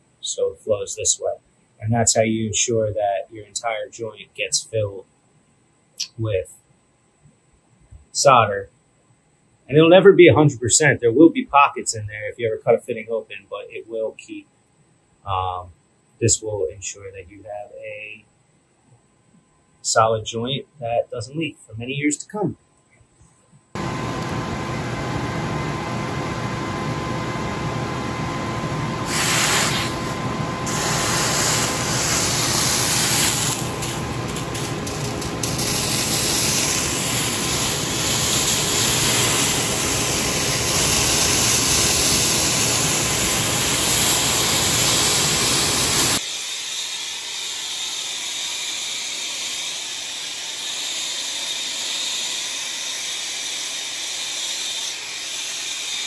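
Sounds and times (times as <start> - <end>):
torch flame hissing: 23.8 - 56.0.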